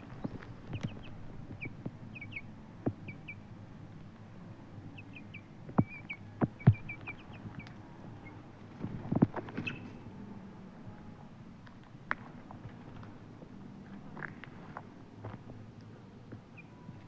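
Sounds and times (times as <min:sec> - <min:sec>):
chicken peeping: 0:00.0 - 0:04.0, 0:04.7 - 0:11.2, 0:16.3 - 0:17.0.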